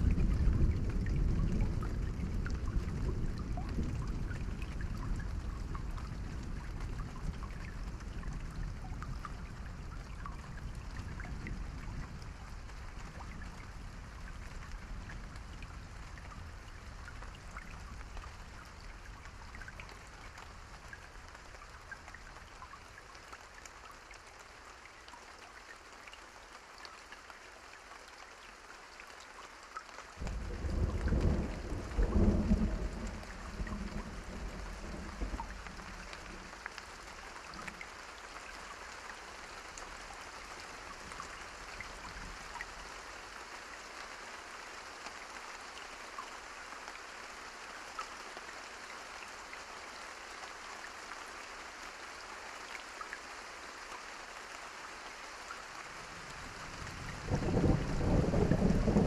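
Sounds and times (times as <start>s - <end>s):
steady rain: 0.0s - 59.0s
loud thunderclap: 30.2s - 35.8s, 57.2s - 59.0s
thunder rumbling: 30.2s - 36.5s, 57.0s - 59.0s.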